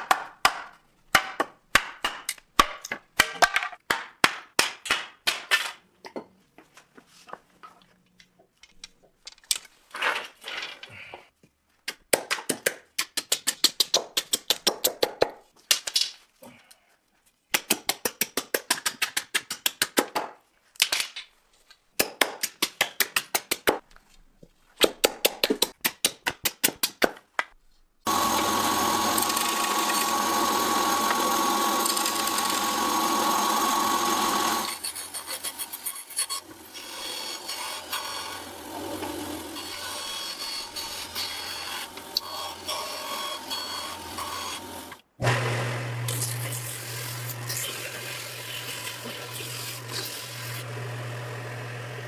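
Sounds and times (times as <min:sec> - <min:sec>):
power tool whining: 0:28.1 - 0:52.0.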